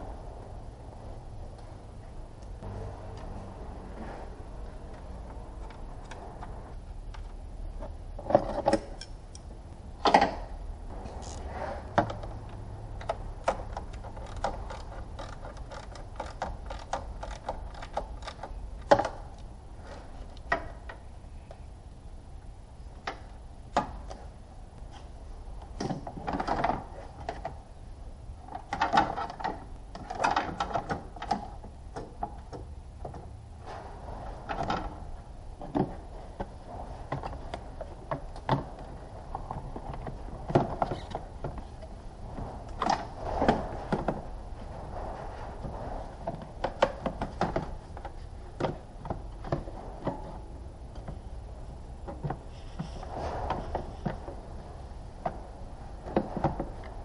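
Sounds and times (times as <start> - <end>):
low hum: 0.0 - 8.2
clicks and clanks of car parts: 4.9 - 6.5, 7.1 - 21.6, 24.9 - 27.6, 28.4 - 33.8, 34.4 - 44.4, 45.6 - 51.3.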